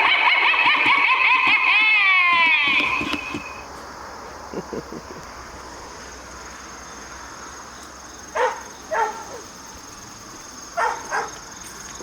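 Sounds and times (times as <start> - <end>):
high chorus of insects: 0.0 - 12.0
dog barking: 8.4 - 9.4, 10.8 - 11.4.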